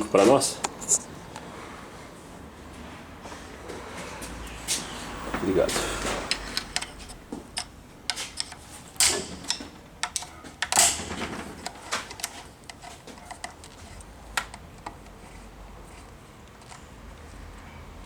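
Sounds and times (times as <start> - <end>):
loud metal clanks: 5.8 - 12.2
metallic clicks and knocks of tools: 6.0 - 15.2.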